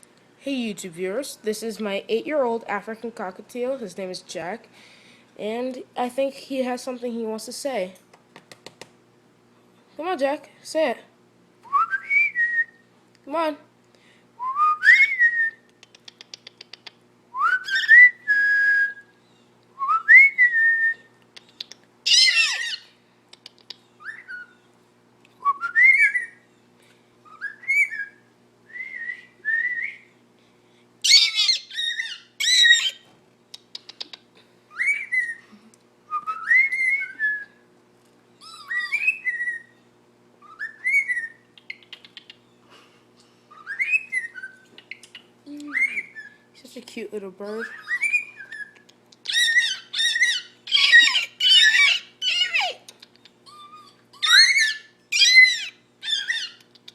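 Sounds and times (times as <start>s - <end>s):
bird fast clicking: 15.7s - 17.0s, 23.3s - 23.8s, 33.6s - 34.2s, 41.6s - 42.4s, 56.6s - 56.9s
cockatiel whistling: 17.4s - 19.0s, 27.2s - 28.2s, 31.1s - 33.0s, 34.7s - 35.4s, 36.2s - 37.5s, 38.4s - 39.8s, 40.4s - 42.4s, 43.5s - 45.2s, 47.7s - 52.7s, 53.6s - 56.6s
harsh squawk-like calls: 22.1s - 23.0s, 31.0s - 33.0s, 49.3s - 52.9s, 53.5s - 56.7s.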